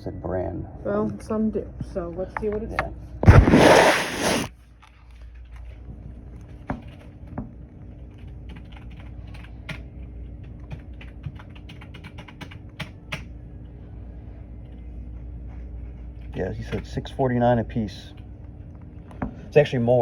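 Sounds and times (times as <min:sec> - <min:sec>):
loud rustle: 0:03.2 - 0:04.5.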